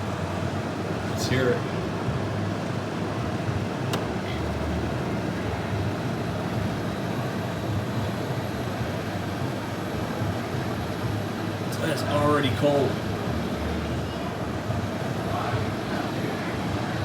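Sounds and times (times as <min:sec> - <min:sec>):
air conditioner running: 0:00.0 - 0:17.0
sharp click: 0:03.9 - 0:04.1.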